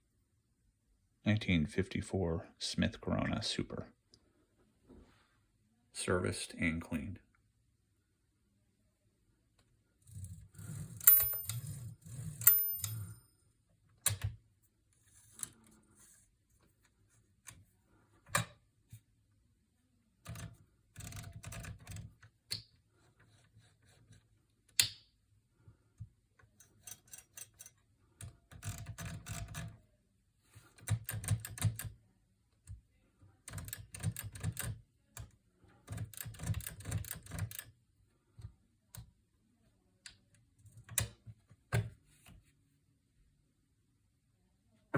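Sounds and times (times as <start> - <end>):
manual typewriter keystrokes: 20.3 - 22.2, 28.5 - 29.7, 30.8 - 31.9, 33.5 - 34.8, 35.9 - 37.7.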